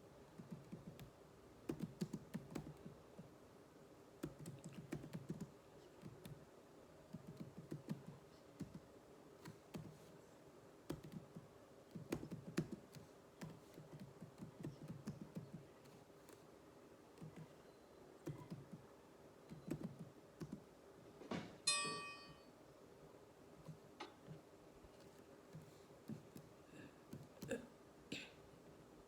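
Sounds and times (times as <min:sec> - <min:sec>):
computer keyboard typing: 0:00.4 - 0:03.0, 0:04.2 - 0:06.4, 0:07.1 - 0:10.1, 0:10.9 - 0:16.4, 0:17.2 - 0:17.6, 0:18.2 - 0:18.9, 0:19.5 - 0:20.7.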